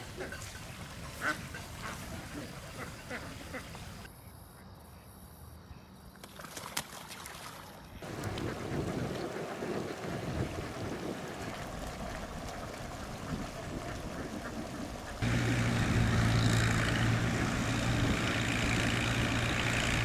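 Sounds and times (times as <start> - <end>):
ducks quacking: 0.0 - 4.1, 8.0 - 11.0, 12.5 - 20.0
wind noise: 8.0 - 20.0.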